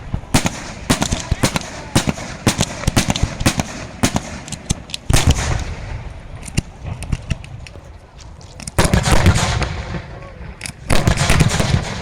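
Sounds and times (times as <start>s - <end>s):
fireworks cracking: 0.0s - 7.8s, 8.5s - 12.0s.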